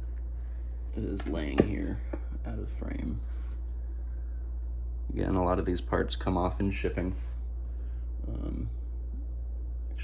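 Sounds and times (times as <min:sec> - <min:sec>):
low electrical hum: 0:00.0 - 0:10.0
person speaking: 0:00.9 - 0:03.3.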